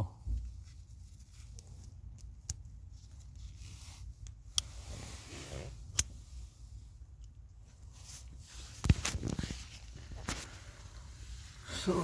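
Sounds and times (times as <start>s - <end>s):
faint rustling and scraping: 0.2s - 12.0s.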